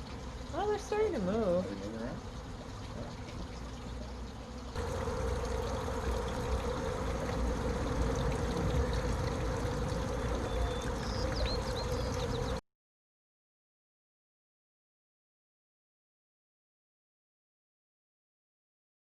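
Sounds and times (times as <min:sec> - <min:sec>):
honey bees humming: 0:04.8 - 0:12.6
faint bird chirps: 0:10.2 - 0:12.6.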